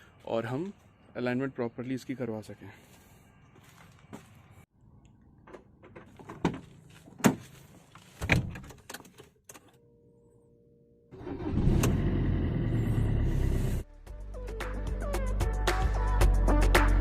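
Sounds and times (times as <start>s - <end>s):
background music: 13.9s - 17.0s.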